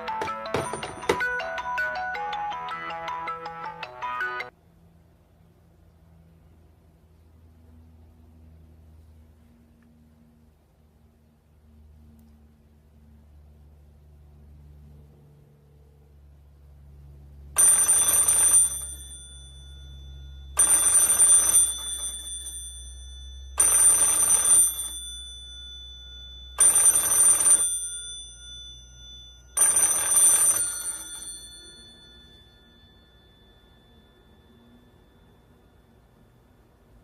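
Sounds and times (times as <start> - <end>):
telephone bell ringing: 0.0 - 4.5, 17.6 - 37.0.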